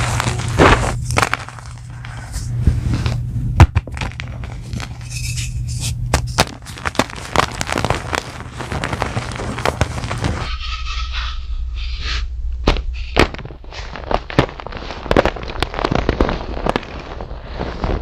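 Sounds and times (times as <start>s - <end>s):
chalk blocks crumbling by hand: 0.0s - 2.5s, 3.7s - 5.1s, 6.1s - 10.5s, 12.7s - 18.0s
low steady hum: 0.0s - 18.0s.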